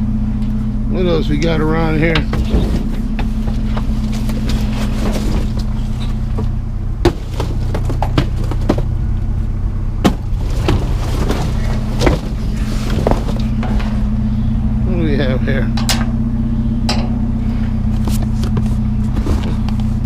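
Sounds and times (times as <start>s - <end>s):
vehicle engine idling: 0.0s - 20.0s
objects knocking and clattering: 2.2s - 9.0s.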